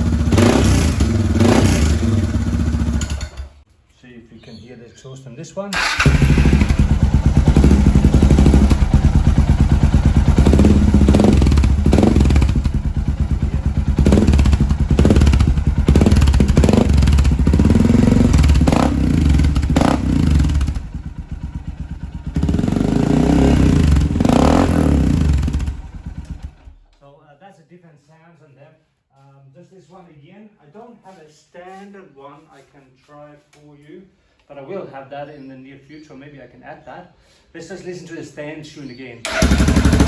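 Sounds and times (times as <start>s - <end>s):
motorcycle engine revving: 0.0s - 3.5s, 5.8s - 26.8s, 39.3s - 40.0s
engine switched off: 5.8s - 9.3s, 39.3s - 40.0s.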